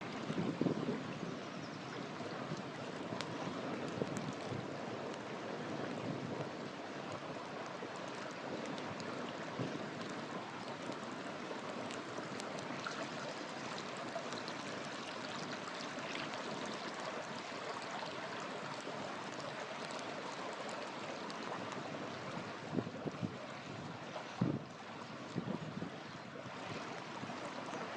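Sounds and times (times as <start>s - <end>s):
campfire hissing: 2.2s - 22.7s
fire crackles: 2.2s - 25.6s.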